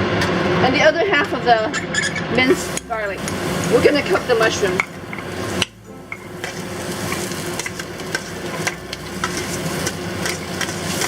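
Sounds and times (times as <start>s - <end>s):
oil and food sizzling: 2.4s - 11.0s
spatula clicking against pan: 4.8s - 11.0s.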